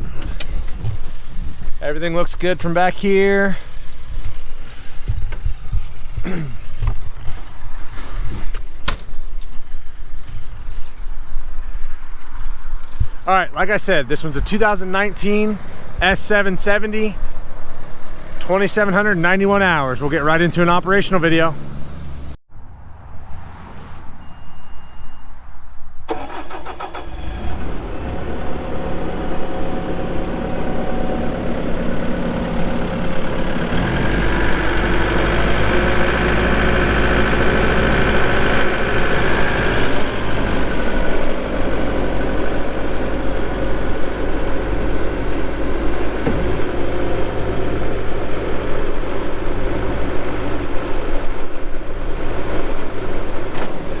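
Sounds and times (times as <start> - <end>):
diesel engine cranking and starting: 0.0 - 11.2, 26.0 - 54.0
short beep: 24.2 - 25.6
engine running: 26.1 - 54.0.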